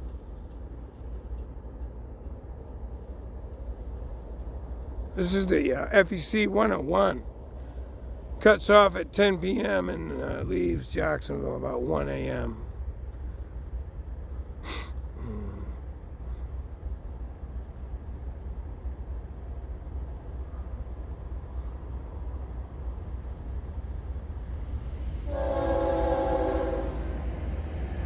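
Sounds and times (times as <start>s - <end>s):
crickets chirping: 0.0s - 28.0s
freight train rumbling: 3.9s - 14.9s, 20.2s - 28.0s
locomotive horn blast: 25.3s - 27.2s.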